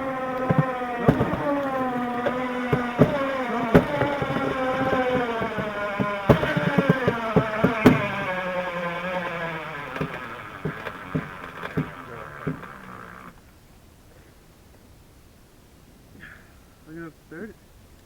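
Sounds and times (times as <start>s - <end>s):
sharp knocks and cracks: 0.0s - 13.3s
motor running under load: 0.0s - 13.4s.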